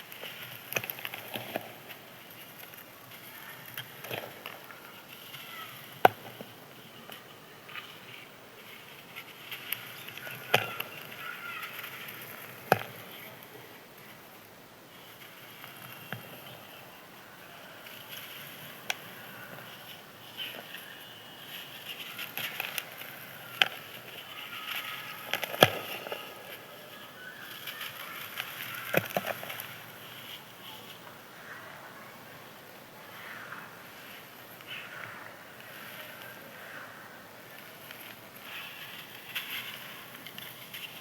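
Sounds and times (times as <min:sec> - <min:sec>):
sharp cracks of sand: 0:00.0 - 0:06.6, 0:09.3 - 0:13.5, 0:18.0 - 0:30.3
dried sand crumbling crackle: 0:00.0 - 0:41.0.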